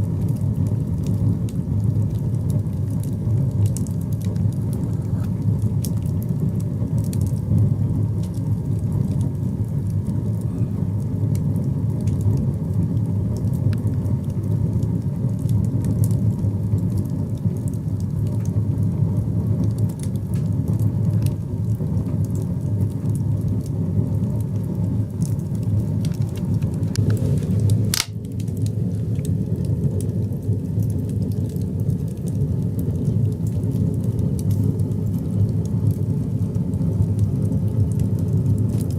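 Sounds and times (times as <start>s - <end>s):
firewood crackles: 0.0s - 38.9s
low rumble of fire: 0.0s - 38.9s
sharp pop of firewood: 27.9s - 28.2s.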